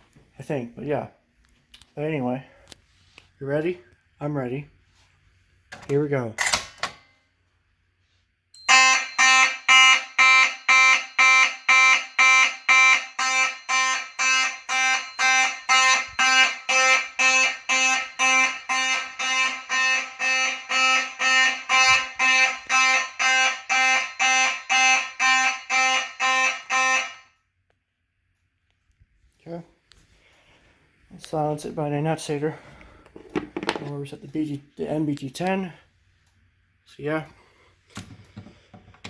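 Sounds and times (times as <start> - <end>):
fire alarm horn buzzy pulses: 8.0 - 27.8.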